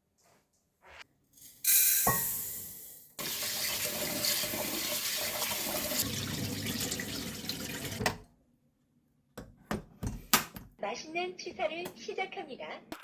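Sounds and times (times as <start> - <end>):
water running from a tap: 1.4 - 8.2.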